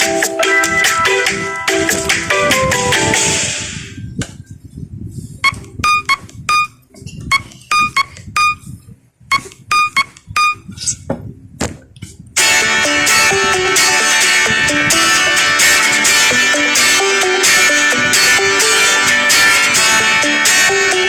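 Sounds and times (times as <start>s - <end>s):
synthesized ringtone melody: 0.0s - 3.5s, 12.4s - 21.0s.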